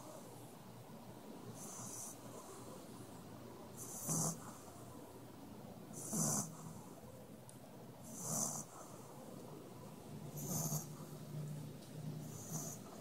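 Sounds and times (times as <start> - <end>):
dog snoring: 1.5 - 3.0, 3.7 - 5.0, 5.9 - 7.0, 8.0 - 9.2, 10.3 - 11.3, 12.2 - 13.0.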